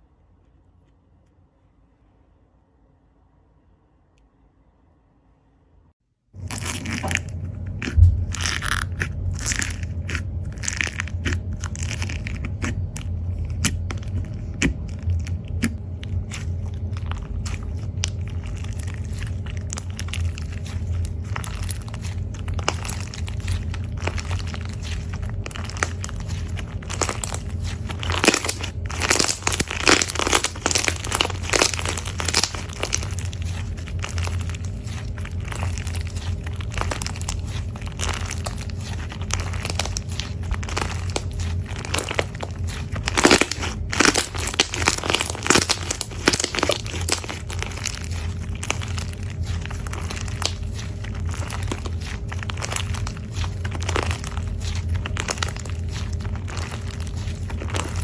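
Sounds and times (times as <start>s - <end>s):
steady low hum: 0.0s - 58.0s
slime crackling and popping: 6.4s - 58.0s.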